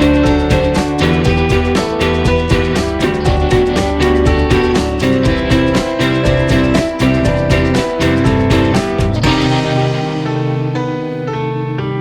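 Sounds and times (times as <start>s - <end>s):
plucked guitar melody: 0.0s - 12.0s
strummed guitar: 0.0s - 12.0s.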